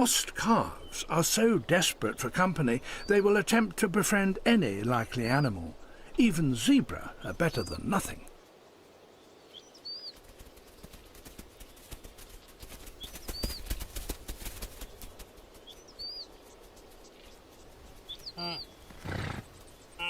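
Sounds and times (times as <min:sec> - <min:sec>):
hooves on dry ground: 0:09.5 - 0:20.0.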